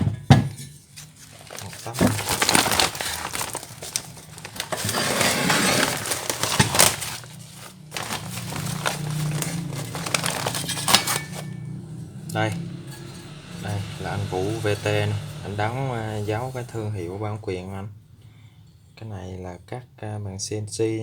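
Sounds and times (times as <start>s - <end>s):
plastic wrapping crinkling: 1.0s - 11.6s.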